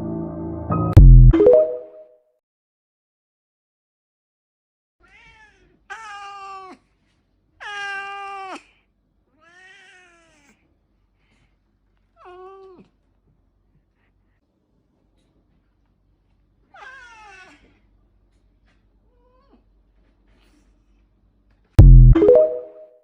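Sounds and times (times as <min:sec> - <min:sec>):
cat meowing: 0:05.0 - 0:06.8, 0:09.4 - 0:10.5.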